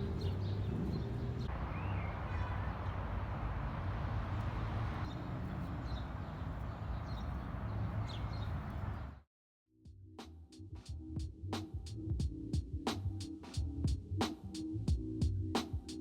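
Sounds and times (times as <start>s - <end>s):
bird chirps: 0.0s - 3.0s, 5.1s - 9.2s
traffic hum: 0.0s - 9.2s.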